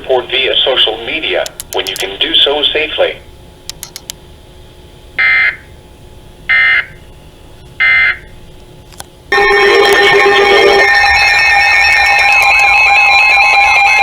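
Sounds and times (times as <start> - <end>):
steady alert attention tone: 9.3 - 13.2
electronic data bursts: 9.3 - 14.0.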